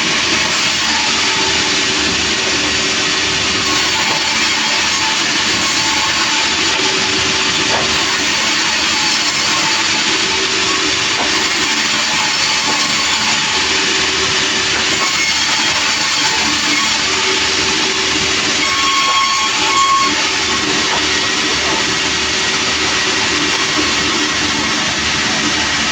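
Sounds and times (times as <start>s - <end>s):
sawmill machinery running: 0.0s - 25.9s.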